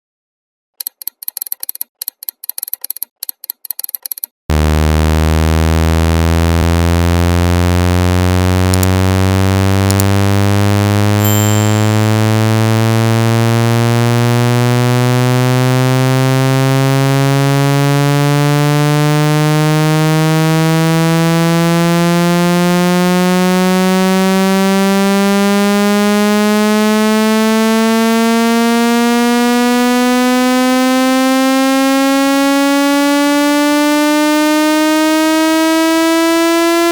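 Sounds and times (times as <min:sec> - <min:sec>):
buzzy synthesized rising tone: 0:04.5 - 0:13.4
short ticks: 0:08.7 - 0:09.0, 0:09.9 - 0:10.1.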